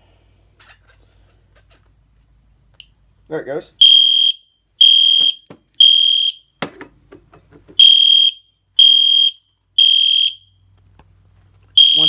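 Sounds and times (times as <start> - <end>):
fire alarm beeping: 3.8 - 6.5, 7.8 - 10.6, 11.8 - 12.0.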